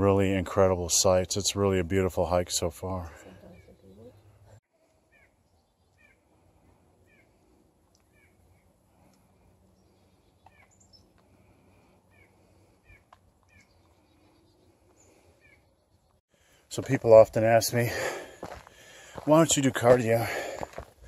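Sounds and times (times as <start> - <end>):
bird calling: 3.0 - 6.3, 7.0 - 11.4, 12.0 - 16.2.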